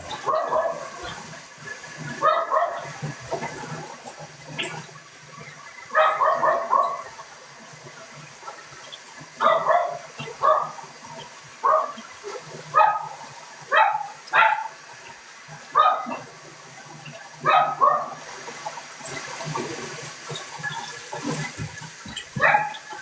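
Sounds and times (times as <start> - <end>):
dog barking: 0.1 - 1.2, 2.1 - 3.0, 5.9 - 7.2, 9.4 - 10.9, 11.6 - 15.0, 15.6 - 16.3, 17.4 - 18.3, 22.4 - 22.9.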